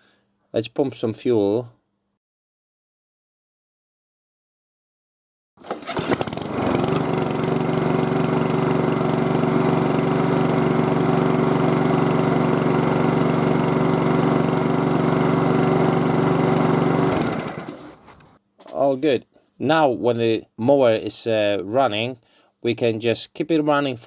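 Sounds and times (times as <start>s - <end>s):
lawn mower engine running: 5.6s - 18.4s.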